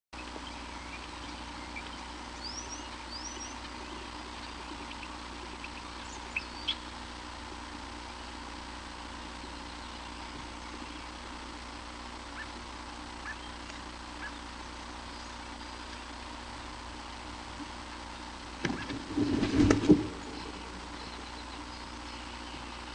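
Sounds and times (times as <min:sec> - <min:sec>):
high rising bird chirps: 0:00.2 - 0:06.9, 0:13.2 - 0:16.8, 0:20.2 - 0:22.9
background hum and hiss: 0:00.2 - 0:22.9.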